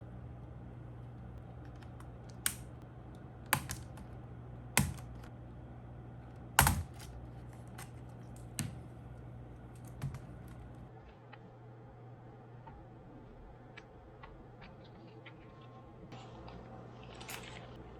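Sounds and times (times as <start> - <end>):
low steady hum: 0.0 - 17.9
laptop keys clicking: 1.6 - 2.7, 3.5 - 4.1, 4.8 - 5.3, 6.6 - 8.9, 9.8 - 10.6.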